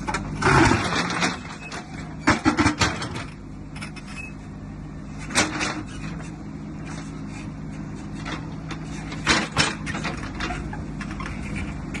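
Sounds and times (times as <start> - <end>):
low motor hum: 0.0 - 12.0.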